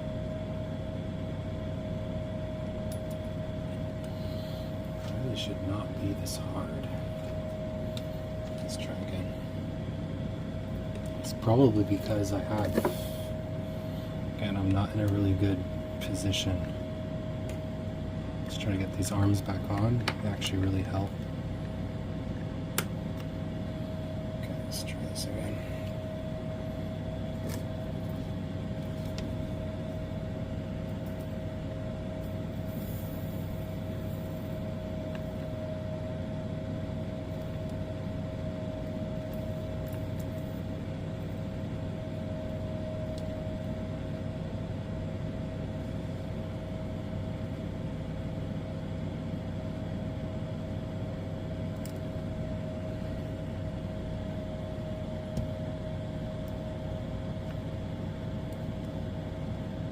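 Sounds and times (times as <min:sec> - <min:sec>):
mechanical hum with whining tone: 0:00.0 - 0:59.9.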